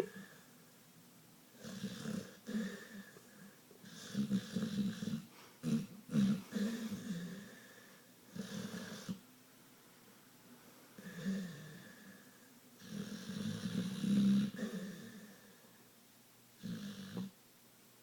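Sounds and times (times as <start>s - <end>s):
dog snoring heavily: 1.6s - 3.0s, 3.8s - 7.6s, 8.3s - 9.2s, 11.0s - 12.1s, 12.8s - 15.4s, 16.6s - 17.3s.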